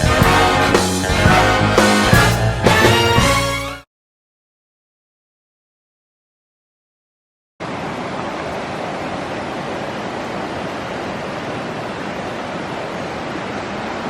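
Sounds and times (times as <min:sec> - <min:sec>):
creek water rushing over rocks: 0:07.6 - 0:14.0.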